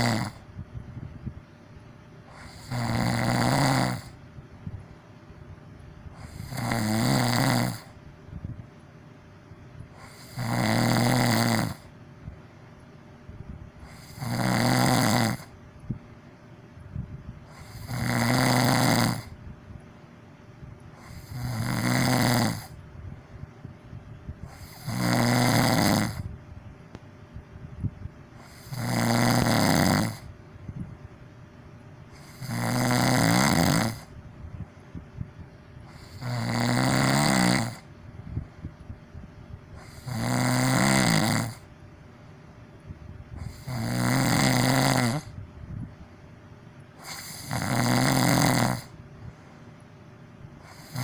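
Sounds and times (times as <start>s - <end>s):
person snoring: 0.0s - 0.5s, 2.3s - 4.2s, 6.2s - 8.0s, 10.0s - 11.9s, 13.8s - 15.5s, 17.5s - 19.4s, 21.0s - 22.8s, 24.4s - 26.3s, 28.4s - 30.3s, 32.1s - 34.1s, 35.9s - 37.9s, 39.8s - 41.7s, 43.4s - 45.4s, 47.0s - 49.0s, 50.6s - 51.0s
quiet breathing: 48.8s - 51.0s.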